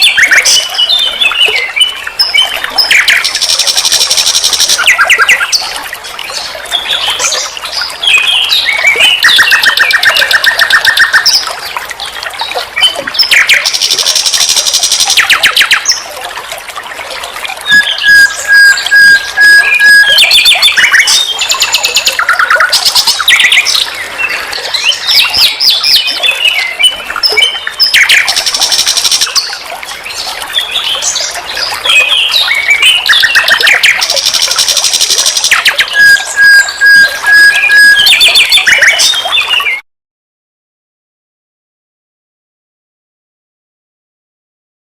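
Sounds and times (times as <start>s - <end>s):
nightingale singing: 17.7s - 23.9s, 24.8s - 29.5s, 30.9s - 39.5s.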